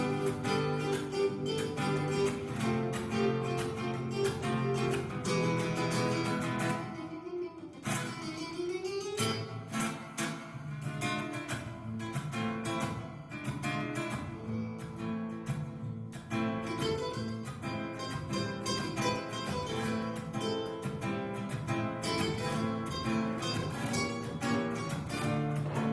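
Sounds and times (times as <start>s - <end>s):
acoustic guitar chords: 0.0s - 25.9s.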